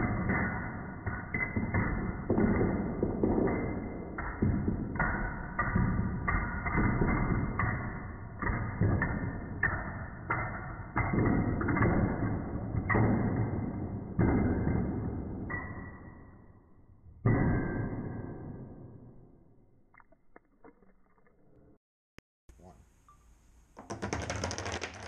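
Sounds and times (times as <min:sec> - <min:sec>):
padlocks knocking on table: 0:23.8 - 0:25.0.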